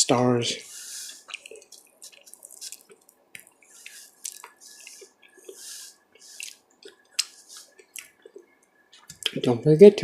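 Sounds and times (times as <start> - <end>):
wet mouth chewing sounds: 1.1 - 5.6, 6.3 - 9.4.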